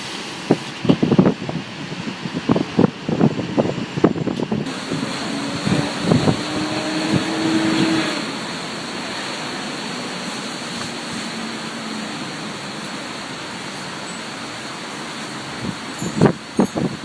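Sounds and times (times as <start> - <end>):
city traffic: 0.0 - 17.0
steady vehicle hum: 0.0 - 17.0
wind buffeting microphone: 0.4 - 8.4, 15.3 - 17.0.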